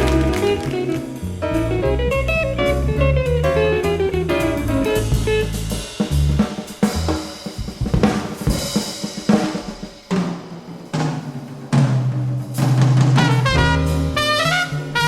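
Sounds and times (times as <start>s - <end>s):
low bass notes: 0.0s - 8.1s, 13.2s - 15.0s
jazz drum kit playing: 0.0s - 15.0s.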